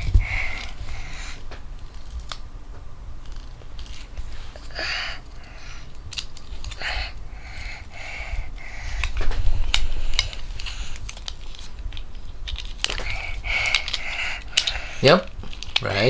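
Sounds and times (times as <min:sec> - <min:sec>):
soft breathy sounds: 0:00.0 - 0:01.6, 0:04.1 - 0:11.3, 0:12.9 - 0:16.0
wooden toy pieces clicking: 0:08.9 - 0:16.0.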